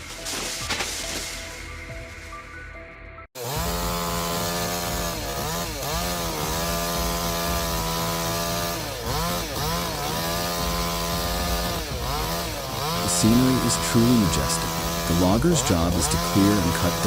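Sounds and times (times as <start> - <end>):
music: 0.0 - 17.0
chainsaw running at high revs: 3.4 - 17.0.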